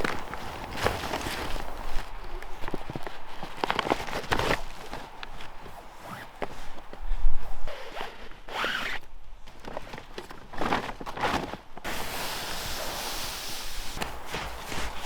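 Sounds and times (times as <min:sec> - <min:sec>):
snowshoe footsteps crunching in snow: 0:00.0 - 0:09.0, 0:11.3 - 0:15.0
steady hiss: 0:11.8 - 0:15.0.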